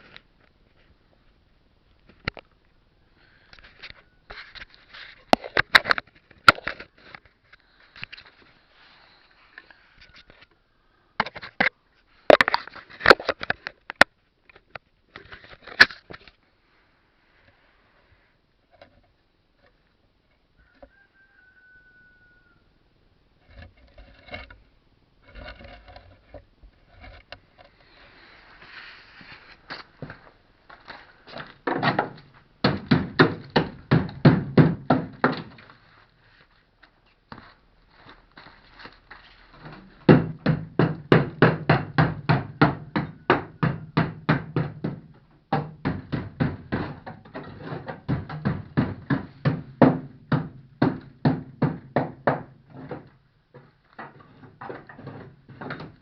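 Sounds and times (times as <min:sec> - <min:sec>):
knocks and handling noises: 0:03.6 - 0:08.5, 0:11.2 - 0:16.4, 0:25.2 - 0:56.0.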